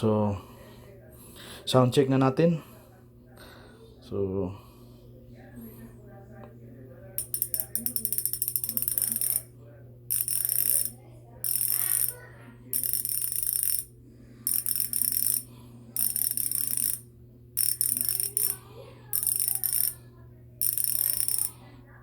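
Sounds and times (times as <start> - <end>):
bicycle freehub clicking: 7.2 - 9.5, 10.1 - 17.0, 17.6 - 20.0, 20.6 - 21.6.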